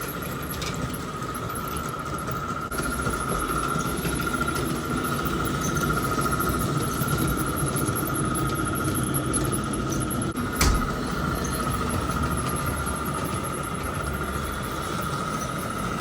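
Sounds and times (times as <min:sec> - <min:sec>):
model steam train running: 0:00.0 - 0:16.0.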